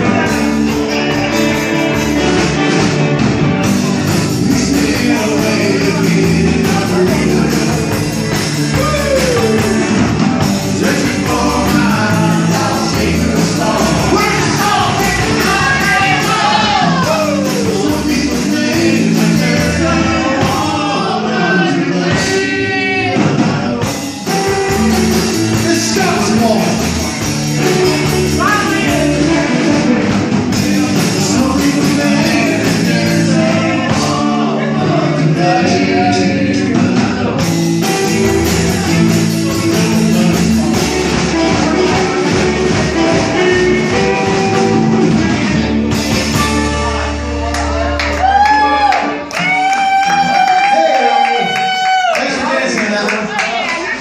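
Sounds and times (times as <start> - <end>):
country rock band music: 0.0 - 54.0.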